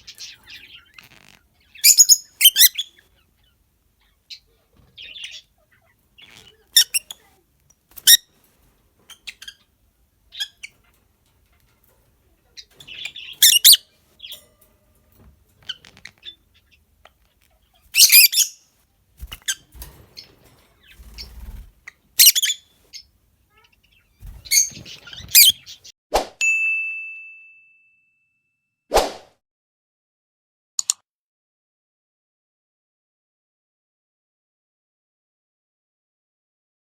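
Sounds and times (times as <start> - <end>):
lovebirds chirping: 0.0 - 25.9
quiet bird chatter: 0.0 - 25.9.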